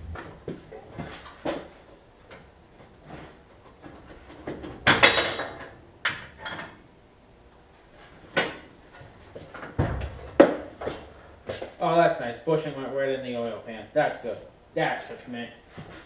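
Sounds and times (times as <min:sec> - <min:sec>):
metal tools clanking and knocking: 0:04.8 - 0:06.8.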